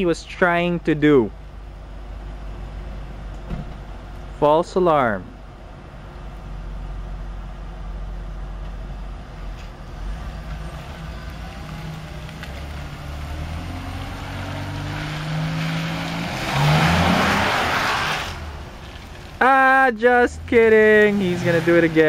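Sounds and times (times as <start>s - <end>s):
engine rush of noise: 0.0s - 22.0s
car engine revving: 9.9s - 22.0s.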